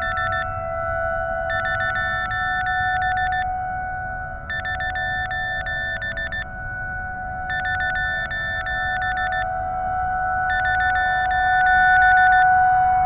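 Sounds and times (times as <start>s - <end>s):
rapid electronic chirping: 0.0s - 0.4s, 1.5s - 3.4s, 4.5s - 6.4s, 7.5s - 9.4s, 10.5s - 12.4s.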